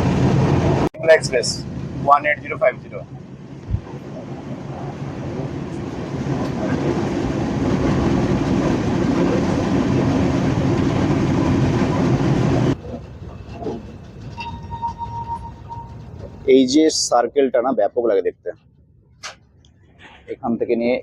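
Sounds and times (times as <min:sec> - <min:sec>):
rail clatter: 0:00.0 - 0:17.1
train wheels rumbling on rails: 0:00.0 - 0:17.7.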